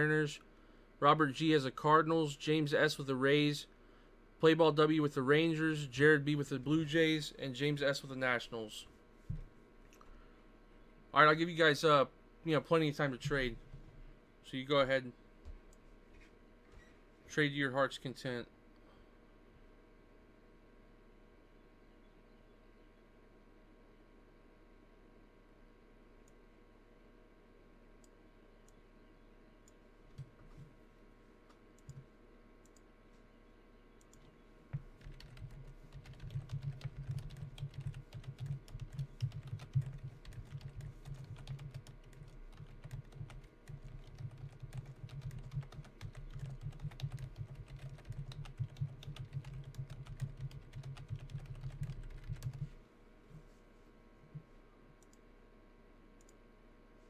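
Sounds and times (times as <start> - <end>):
typing on computer keyboard: 35.0 - 52.7.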